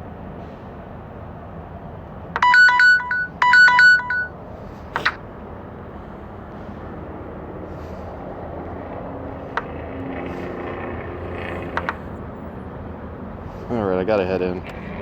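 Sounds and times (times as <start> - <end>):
phone alert tone: 2.4 - 4.3, 5.0 - 5.2.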